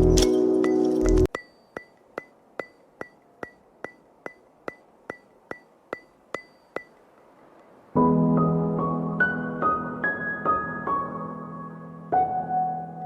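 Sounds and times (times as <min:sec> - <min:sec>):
background music: 0:00.0 - 0:01.3.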